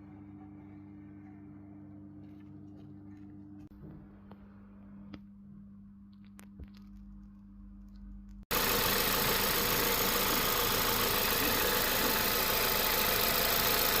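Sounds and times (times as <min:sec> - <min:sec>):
car engine idling: 0:08.5 - 0:14.0.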